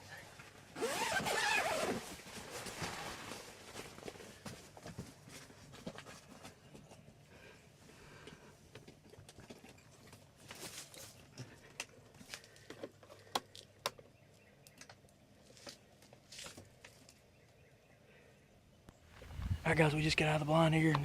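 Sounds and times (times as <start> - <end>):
faint rustling: 18.9 - 21.0.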